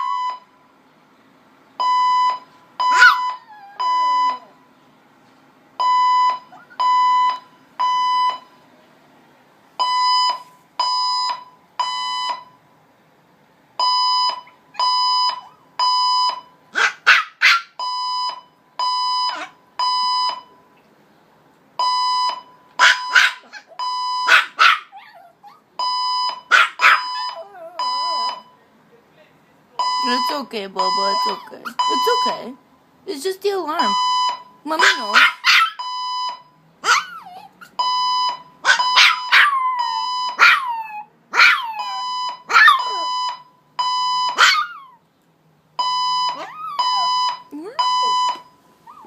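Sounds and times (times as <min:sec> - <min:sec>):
fire alarm beeping: 0:00.0 - 0:00.6, 0:01.8 - 0:04.4, 0:05.8 - 0:08.6, 0:09.8 - 0:12.6, 0:13.8 - 0:16.6, 0:17.8 - 0:20.6, 0:21.8 - 0:24.4, 0:25.8 - 0:28.6, 0:29.8 - 0:32.6, 0:33.8 - 0:34.6, 0:35.8 - 0:36.6, 0:37.8 - 0:40.5, 0:41.8 - 0:44.5, 0:45.8 - 0:48.6
dog howling: 0:03.0 - 0:04.5, 0:27.1 - 0:28.0, 0:39.2 - 0:43.2, 0:46.4 - 0:47.3.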